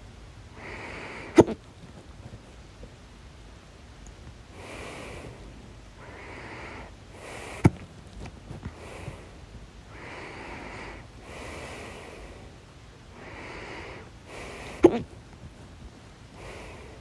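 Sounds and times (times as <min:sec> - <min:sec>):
person breathing: 0:00.5 - 0:02.6, 0:04.5 - 0:17.0
person hiccuping: 0:01.4 - 0:01.6, 0:14.8 - 0:15.2.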